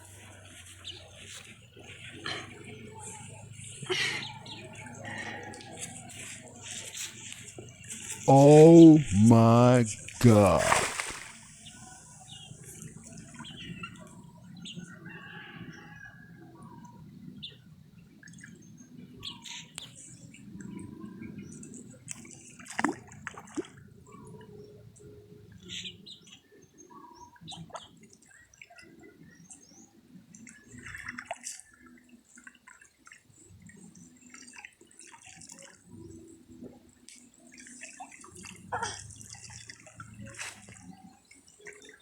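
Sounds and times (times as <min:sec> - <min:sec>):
flowing water rushing: 0:08.3 - 0:11.5
water splashing and dripping: 0:10.1 - 0:11.7, 0:30.3 - 0:42.0.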